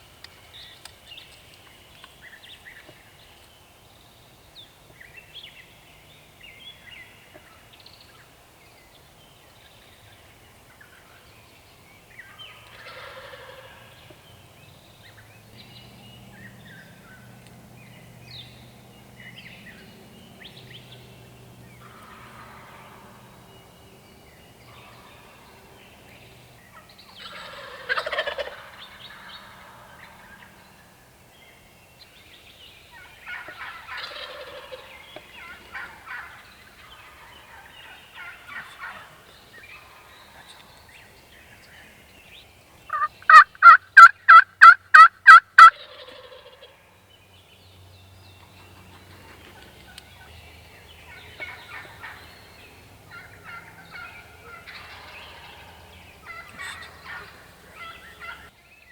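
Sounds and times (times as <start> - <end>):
turkeys gobbling: 12.2 - 14.2, 19.1 - 31.0, 32.9 - 40.7, 42.9 - 46.8, 51.0 - 58.6
turkey yelps: 27.2 - 30.5, 33.0 - 39.2, 42.9 - 46.8, 51.1 - 52.3, 53.1 - 58.5.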